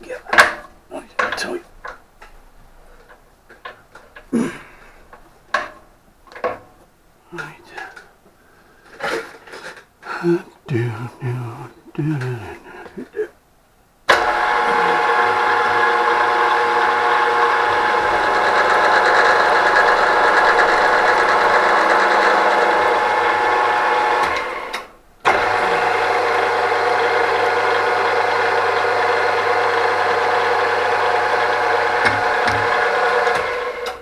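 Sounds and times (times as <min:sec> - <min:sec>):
machine spindle motor whining: 0:14.1 - 0:34.0.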